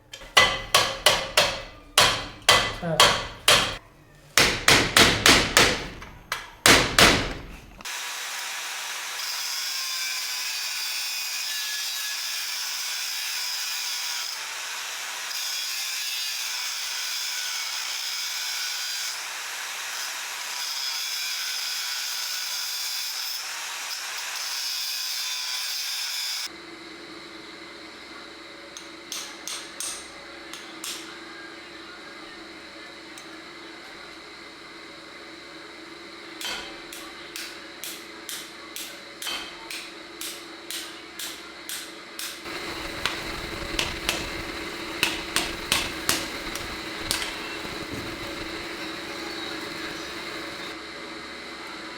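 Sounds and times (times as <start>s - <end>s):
hammer striking metal: 0.2s - 3.8s, 4.4s - 7.9s, 36.4s - 48.7s
light taps: 42.5s - 47.4s
faint hum: 42.5s - 50.8s
high-pitched abrasive hiss on steel: 42.5s - 50.8s.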